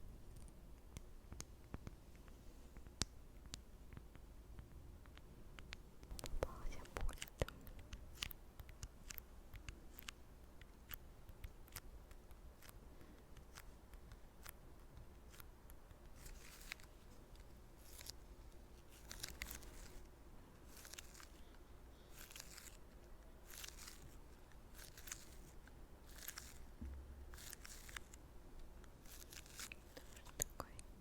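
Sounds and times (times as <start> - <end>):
crisp crackling rustles: 16.0 - 30.8.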